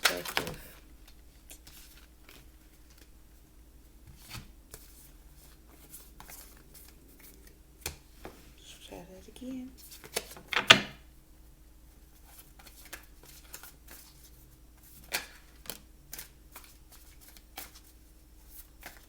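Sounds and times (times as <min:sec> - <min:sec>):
cards shuffling: 0:00.0 - 0:03.1, 0:04.1 - 0:08.4, 0:12.2 - 0:19.0.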